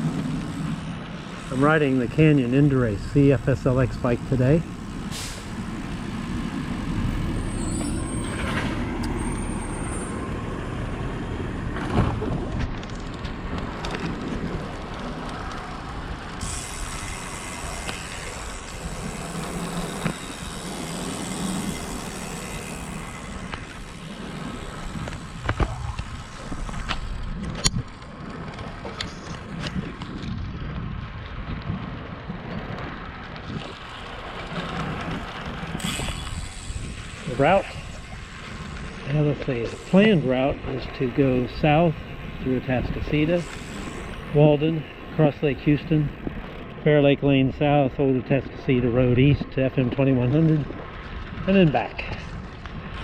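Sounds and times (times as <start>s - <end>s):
bicycle road noise: 0.0s - 53.0s
traffic rumble: 0.0s - 53.0s.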